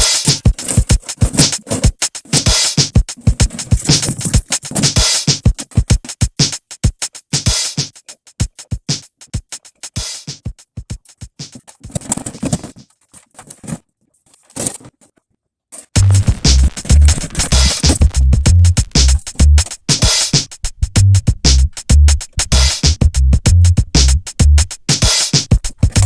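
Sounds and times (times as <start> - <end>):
music with drum-machine beat: 0.0 - 12.8, 16.0 - 26.0
heavy bass beat: 16.0 - 26.0.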